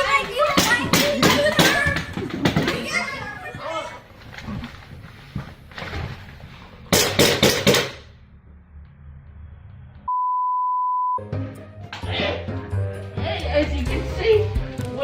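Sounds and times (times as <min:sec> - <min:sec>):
censor bleep: 0:10.1 - 0:11.2.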